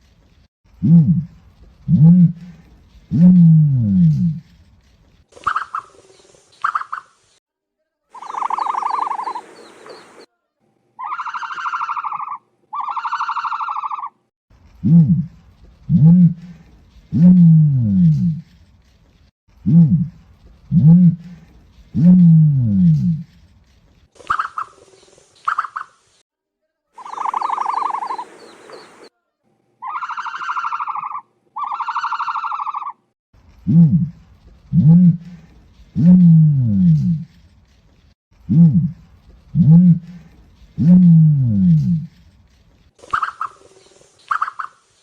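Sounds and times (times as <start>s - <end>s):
bird calls: 5.4s - 7.4s, 8.1s - 10.3s, 24.2s - 26.1s, 27.0s - 29.1s, 29.8s - 33.0s, 43.0s - 44.9s
ostrich buzzy calls: 8.2s - 10.3s, 27.0s - 29.1s
rapidly pulsing bird call: 8.2s - 10.3s, 11.0s - 14.2s, 27.0s - 29.1s, 29.8s - 33.0s, 43.0s - 44.9s.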